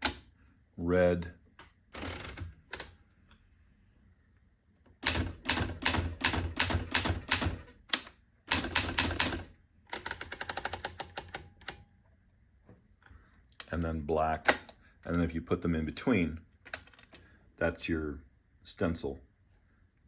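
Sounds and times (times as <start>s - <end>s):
manual typewriter key strikes: 5.0s - 11.8s
typewriter mechanism clatter: 5.0s - 11.8s.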